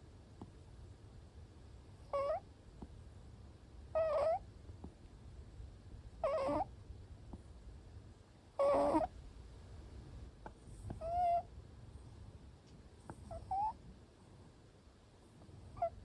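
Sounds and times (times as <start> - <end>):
cat snoring: 2.0 - 2.4, 6.2 - 6.7, 8.6 - 9.1, 10.6 - 11.4, 13.0 - 13.8.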